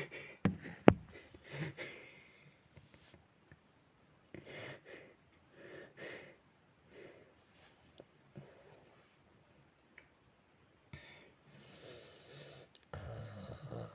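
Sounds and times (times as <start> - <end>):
man snoring: 11.8 - 13.9.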